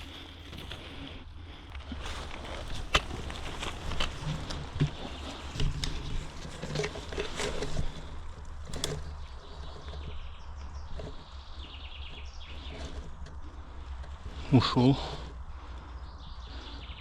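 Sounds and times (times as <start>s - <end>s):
footsteps crunching through undergrowth: 0.0s - 8.3s
twigs snapping: 0.0s - 10.0s.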